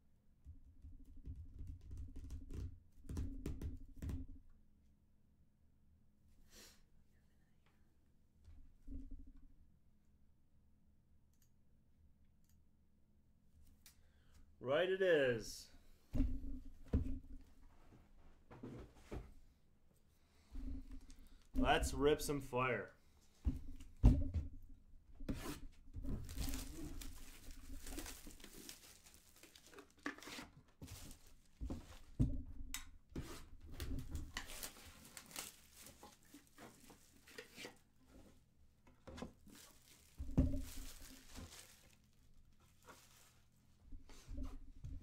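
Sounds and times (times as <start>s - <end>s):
wrapper tearing and crinkling: 26.2s - 30.0s, 34.4s - 36.3s, 39.5s - 42.1s.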